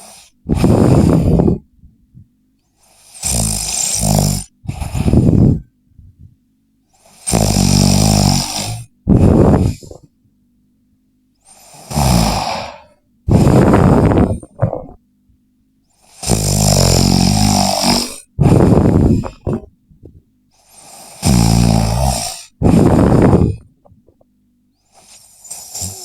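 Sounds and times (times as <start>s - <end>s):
person snoring loudly: 0.0s - 1.6s, 2.8s - 5.7s, 7.0s - 10.1s, 11.5s - 15.0s, 16.0s - 19.7s, 20.6s - 23.7s, 24.9s - 26.0s.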